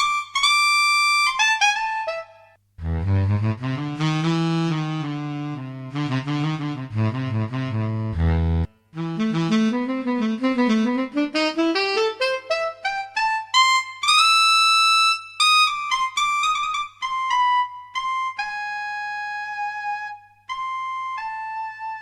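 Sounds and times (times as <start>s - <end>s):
solo saxophone: 0.0s - 22.0s.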